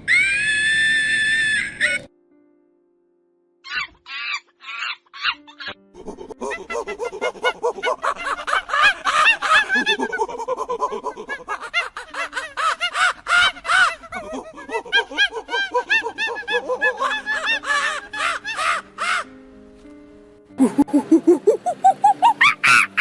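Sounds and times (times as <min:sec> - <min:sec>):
monkeys chattering and screeching: 0:03.7 - 0:05.7.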